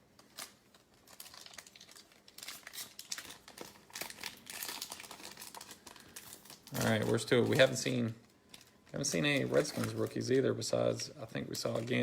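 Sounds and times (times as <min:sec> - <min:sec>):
wrapper crinkling and tearing: 0:00.2 - 0:12.0.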